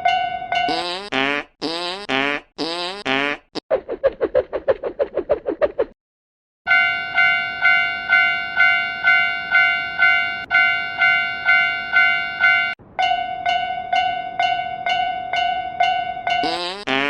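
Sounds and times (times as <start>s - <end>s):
railroad crossing bell clanging: 6.7s - 16.5s.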